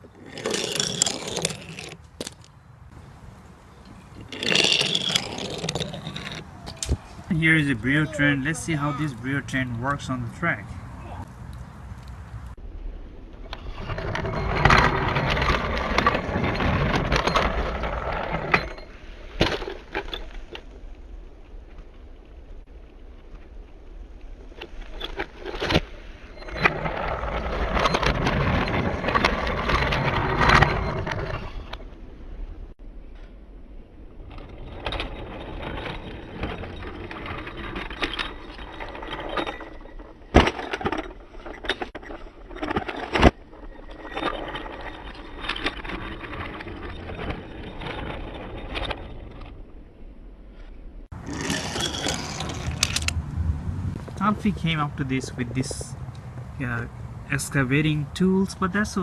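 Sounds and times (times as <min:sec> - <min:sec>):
wooden toy train clattering on track: 0:00.2 - 0:02.5, 0:03.8 - 0:10.2, 0:51.2 - 0:53.2.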